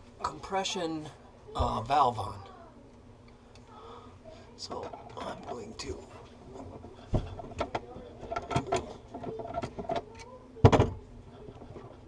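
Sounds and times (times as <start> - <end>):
clicks and knocks of plumbing tools: 6.6 - 12.0.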